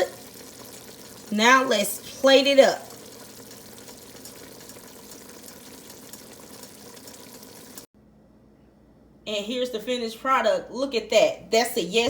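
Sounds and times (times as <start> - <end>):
pot of broth simmering: 0.0 - 7.9.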